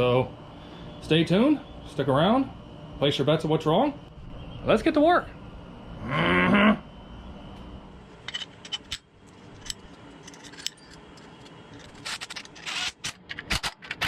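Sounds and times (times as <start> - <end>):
metal tools clinking: 8.2 - 12.7.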